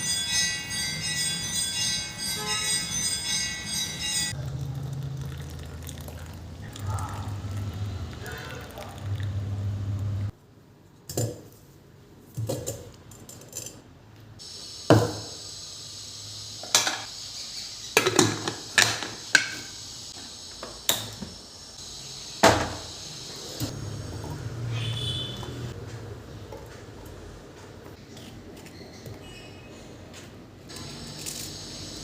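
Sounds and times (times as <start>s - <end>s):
utensils and dishes clinking: 12.4s - 13.9s, 16.6s - 17.1s, 18.0s - 19.8s, 30.7s - 32.0s
steady hiss: 14.4s - 24.1s.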